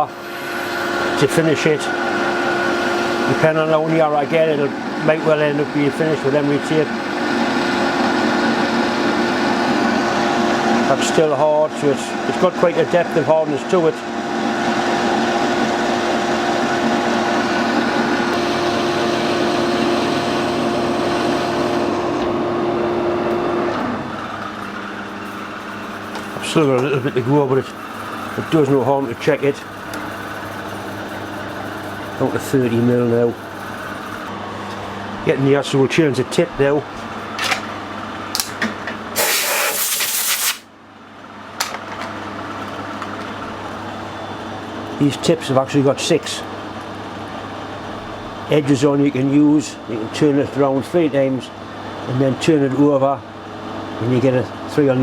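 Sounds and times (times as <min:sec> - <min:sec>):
lathe running: 0:00.0 - 0:34.4
steady machine hum: 0:00.0 - 0:39.7
lathe cutting steel: 0:00.1 - 0:04.0, 0:24.2 - 0:34.3
compressed air blast: 0:39.2 - 0:40.7.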